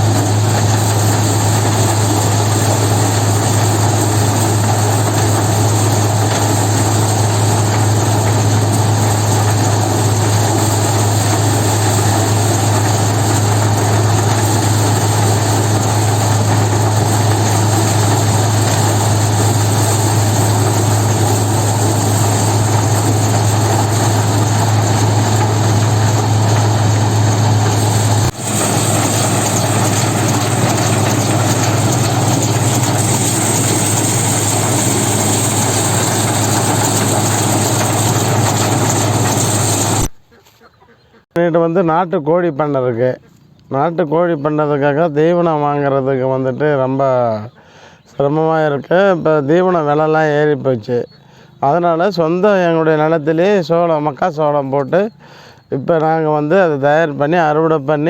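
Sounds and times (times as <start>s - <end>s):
heavy engine running: 0.0s - 40.2s.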